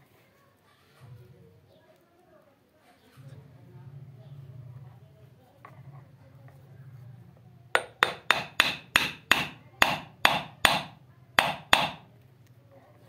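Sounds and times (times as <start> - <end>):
hammer striking metal: 7.8 - 12.0.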